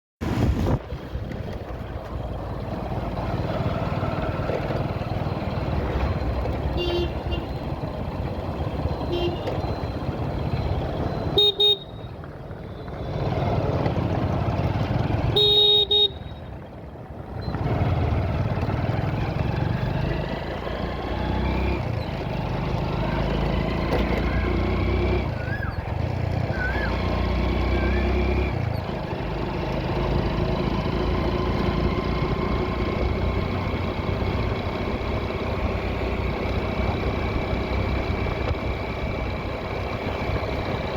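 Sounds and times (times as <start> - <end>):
vehicle engine and road noise: 0.2 - 40.9
car horn honks: 6.7 - 7.6, 9.0 - 9.6, 11.3 - 12.1, 15.2 - 16.4.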